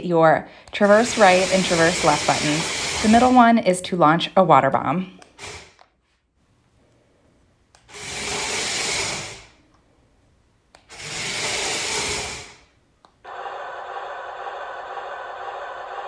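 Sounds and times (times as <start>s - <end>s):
toy motor and gearbox whirring: 0.7s - 3.5s, 7.8s - 9.6s, 10.9s - 12.7s.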